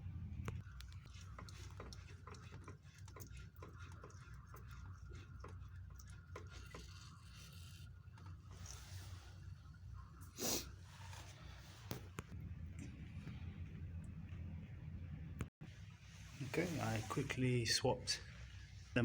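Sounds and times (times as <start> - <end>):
low steady hum: 0.0 - 19.0
water dripping: 0.4 - 8.9.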